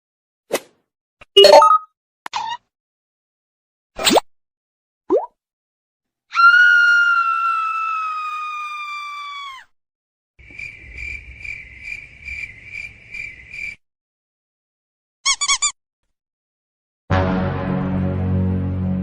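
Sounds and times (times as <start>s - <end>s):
crickets chirping: 10.4s - 13.8s.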